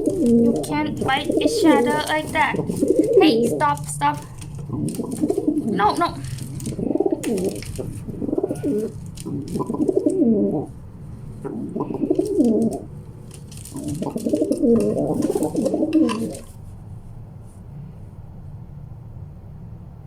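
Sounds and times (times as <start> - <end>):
sharp clicks of birds fighting: 0.0 - 10.7, 11.4 - 16.5
pigeons cooing: 0.0 - 13.0, 13.6 - 16.6.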